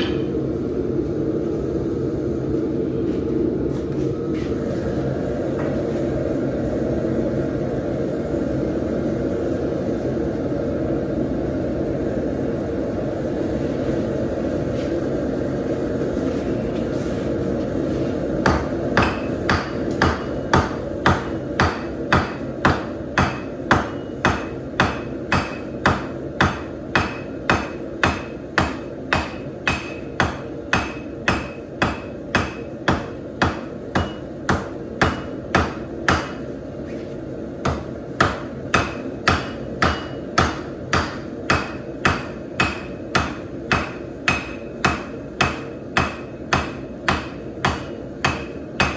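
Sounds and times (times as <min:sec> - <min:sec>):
hammer striking steel on anvil: 0:00.0 - 0:00.4, 0:18.4 - 0:36.6, 0:37.6 - 0:48.9.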